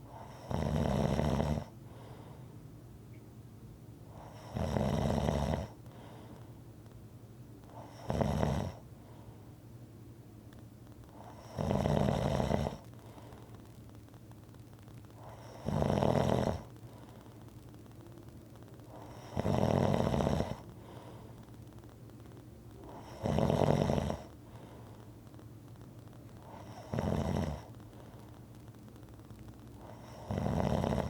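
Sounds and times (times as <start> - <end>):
person snoring: 0.2 - 1.7, 4.2 - 5.8, 7.8 - 8.8, 11.2 - 13.4, 15.2 - 17.2, 18.9 - 21.3, 22.8 - 25.0, 26.4 - 27.7, 29.8 - 31.0.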